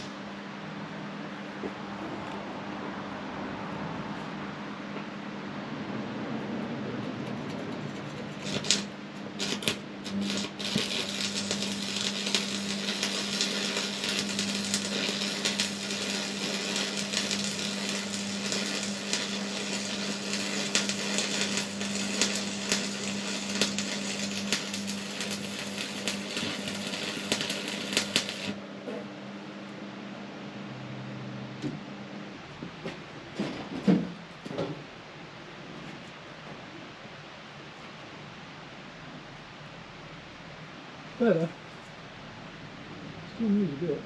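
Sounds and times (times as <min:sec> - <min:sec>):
steady low hum: 0:00.0 - 0:44.0
workshop tool crackling: 0:07.2 - 0:28.6.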